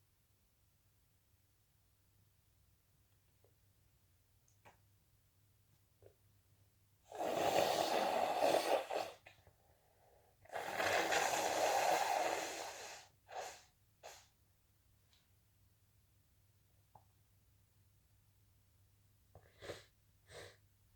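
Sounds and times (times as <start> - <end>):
person blowing nose: 7.1 - 9.3, 10.5 - 14.3, 19.4 - 20.6
short breaths through nose: 9.8 - 14.3.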